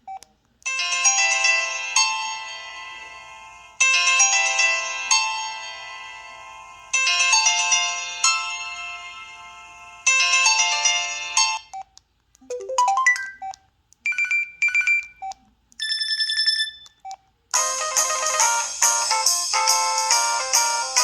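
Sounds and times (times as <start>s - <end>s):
phone ringtone chiming melody: 0.7s - 11.7s, 12.5s - 13.4s, 17.6s - 21.0s.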